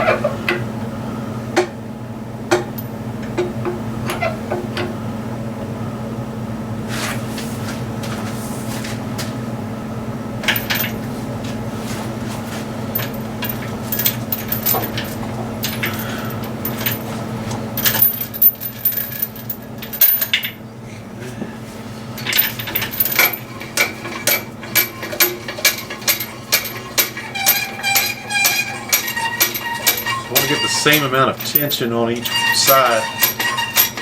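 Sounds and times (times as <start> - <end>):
steady low hum: 0.0 - 34.0
hand tools clicking and rattling: 12.9 - 20.6, 22.2 - 34.0.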